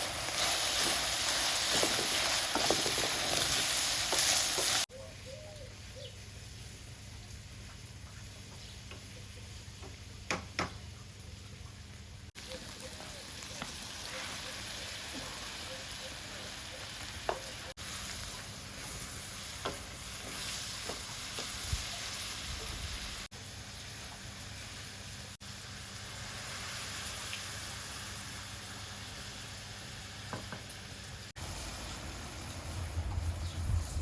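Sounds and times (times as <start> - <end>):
food sizzling in hot oil: 0.0 - 4.9, 12.3 - 34.0.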